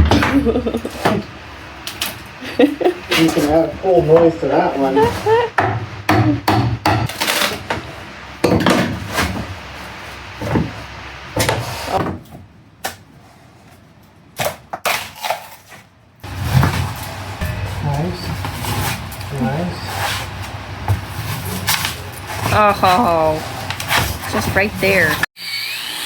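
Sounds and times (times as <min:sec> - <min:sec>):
tools knocking and prying wood: 0:05.0 - 0:07.8.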